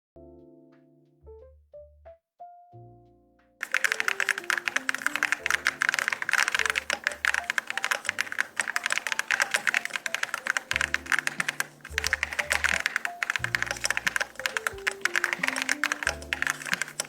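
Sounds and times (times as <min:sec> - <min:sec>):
mechanical keyboard typing: 0:03.6 - 0:17.0.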